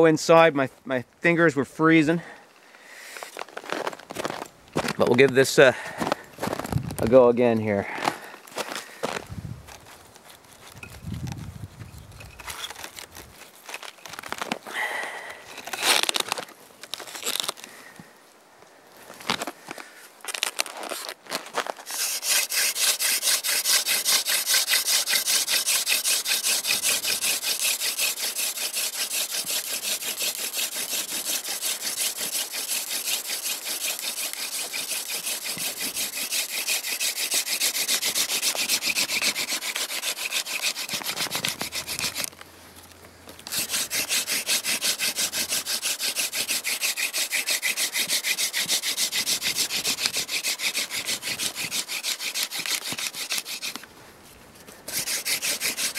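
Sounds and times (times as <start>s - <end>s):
hand drill spindle scraping wood: 12.2s - 14.6s, 20.5s - 42.4s, 43.4s - 53.8s, 54.8s - 55.9s.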